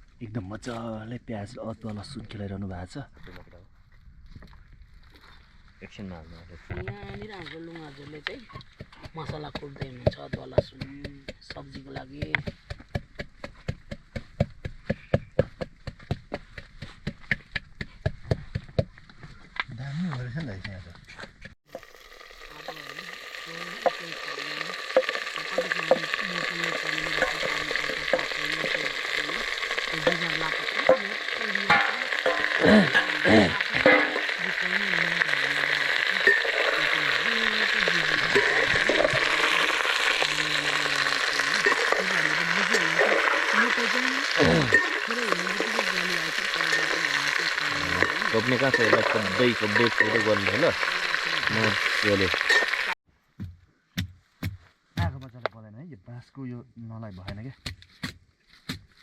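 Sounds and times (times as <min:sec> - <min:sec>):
stirring scraping knocks: 0:06.8 - 0:19.6, 0:23.8 - 0:55.4
pounding ginger and garlic: 0:08.4 - 0:19.2, 0:20.0 - 0:55.6, 0:57.0 - 0:59.0
food sizzling in a pot: 0:21.6 - 0:53.0.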